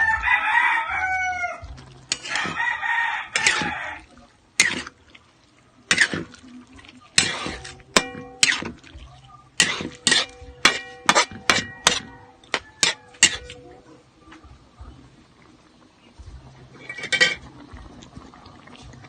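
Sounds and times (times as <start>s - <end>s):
metal utensil clinking on pot: 2.1s - 2.6s, 3.4s - 3.7s, 4.6s - 4.9s, 5.9s - 6.3s, 7.1s - 9.0s, 9.6s - 13.8s, 16.8s - 17.5s.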